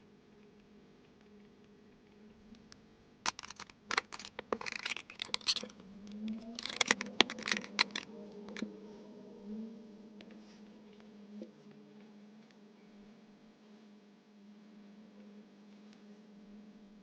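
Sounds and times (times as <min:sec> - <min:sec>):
tape packaging torn and crinkled: 0:03.3 - 0:08.6.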